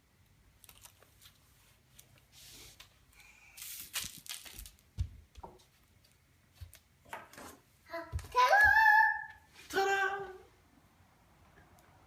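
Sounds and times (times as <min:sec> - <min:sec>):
wrapping crinkling and rustling: 0:00.5 - 0:02.6, 0:03.5 - 0:05.0.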